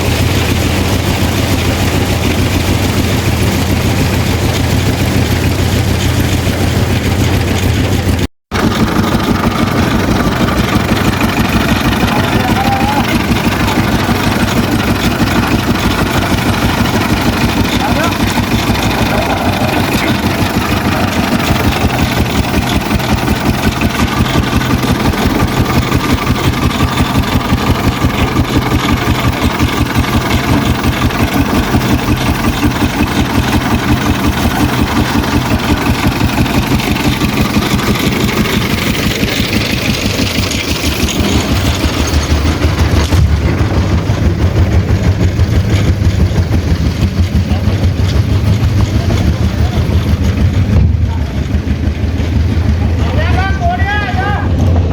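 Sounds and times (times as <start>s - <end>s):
construction machinery engine running: 0.0s - 54.9s.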